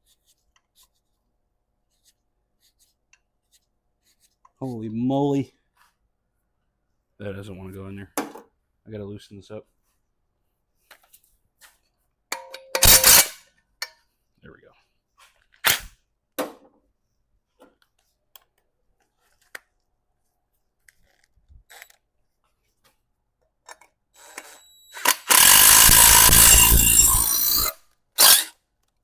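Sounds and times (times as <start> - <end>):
power tool driving bolt: 12.8 - 13.4, 24.2 - 28.6.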